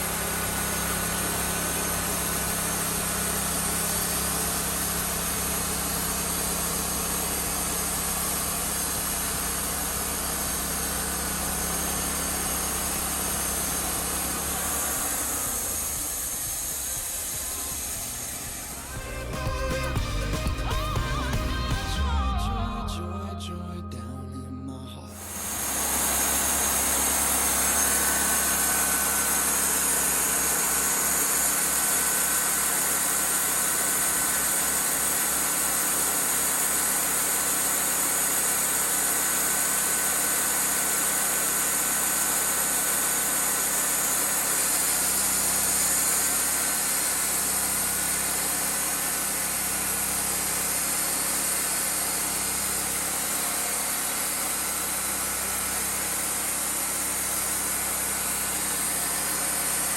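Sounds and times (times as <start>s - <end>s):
band sawmill running: 0.0s - 22.7s, 25.2s - 59.9s.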